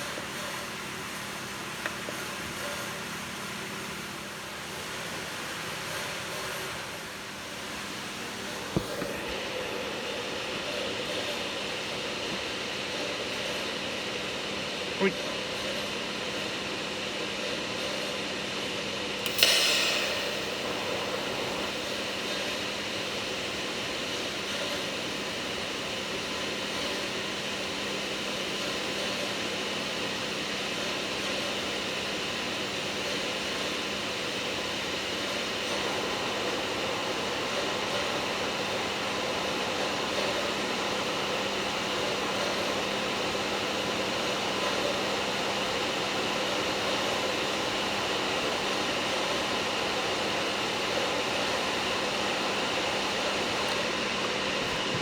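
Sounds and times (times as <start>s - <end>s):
cooling fan hum: 0.0s - 55.0s
sharp click: 19.2s - 22.6s
hiss: 19.3s - 27.4s.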